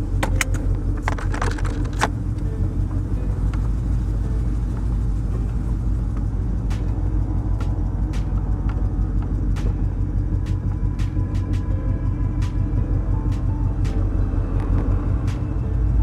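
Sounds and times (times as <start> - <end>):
car engine rumbling: 0.0 - 16.0
sharp clicks: 0.2 - 2.4.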